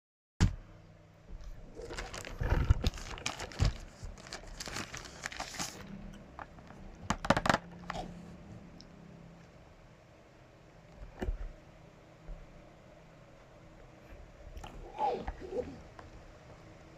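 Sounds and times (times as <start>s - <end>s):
packaging crinkling and rustling: 1.4s - 8.0s.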